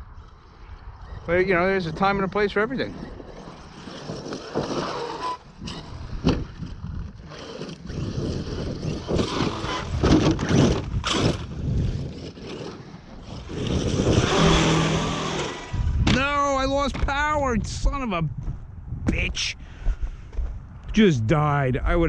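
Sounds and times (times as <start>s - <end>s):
toy truck rattling over dirt: 0.0s - 16.3s.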